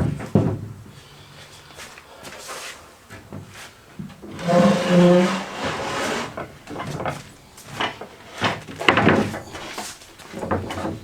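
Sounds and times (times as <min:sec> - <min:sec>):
wooden knocks and clatter: 0:00.0 - 0:00.8, 0:03.1 - 0:11.0.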